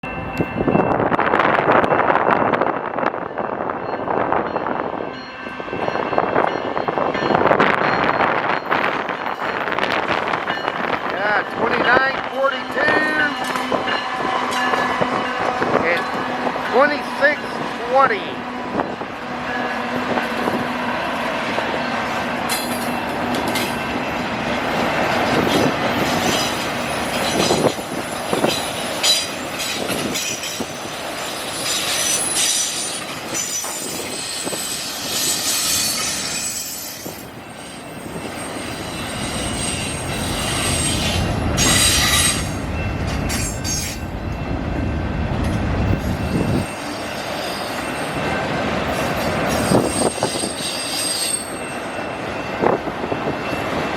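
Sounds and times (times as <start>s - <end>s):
train wheels clacking over rail joints: 21.8s - 37.0s
train wheel squeal: 25.3s - 44.5s, 45.9s - 53.9s.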